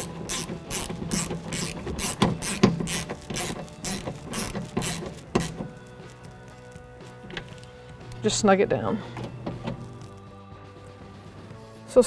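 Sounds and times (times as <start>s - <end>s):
socket ratchet clicking: 0.0s - 8.3s.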